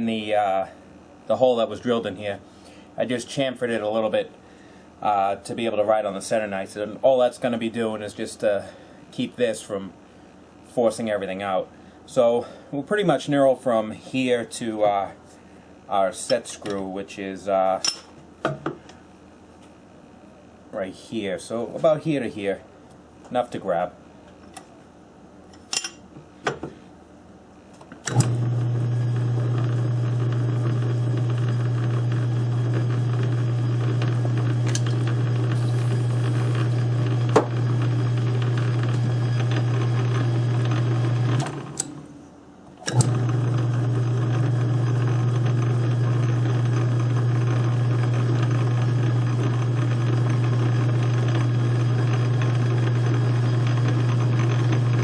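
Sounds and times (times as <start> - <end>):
lathe motor hum: 28.1 - 41.8, 42.9 - 55.0.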